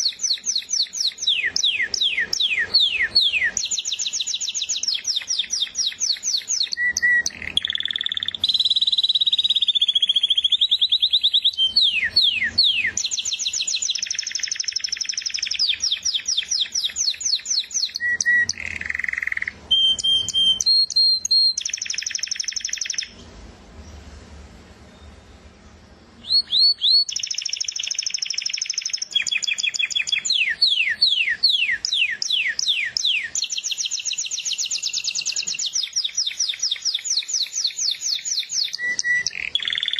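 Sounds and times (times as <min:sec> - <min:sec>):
canary singing trills: 0:00.0 - 0:23.2, 0:26.1 - 0:39.9.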